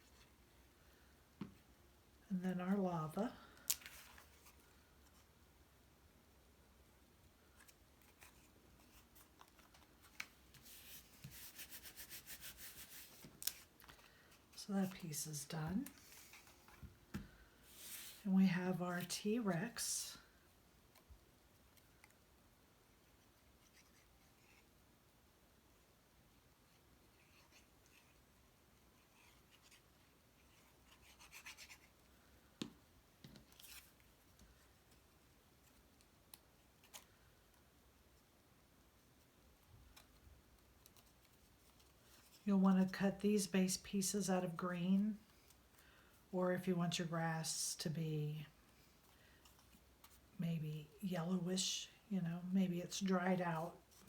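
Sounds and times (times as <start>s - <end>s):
cardstock rubbing and rustling: 7.5s - 17.0s
paper being rubbed: 10.7s - 13.3s.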